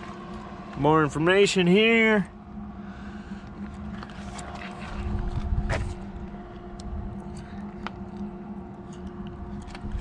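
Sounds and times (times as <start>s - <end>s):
steady mechanical hum: 0.0s - 10.0s
low rumble: 2.2s - 10.0s.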